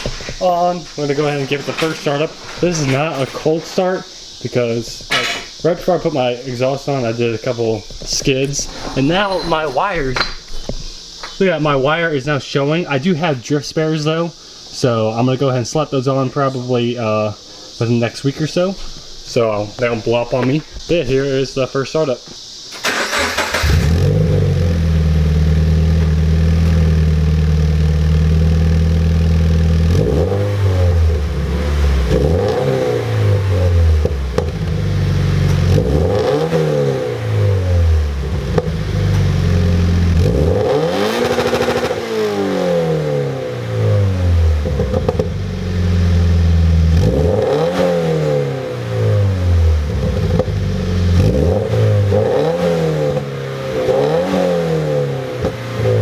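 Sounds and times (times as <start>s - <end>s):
car engine idling: 0.0s - 12.0s, 22.8s - 47.5s, 48.4s - 56.0s
car engine revving: 22.8s - 56.0s.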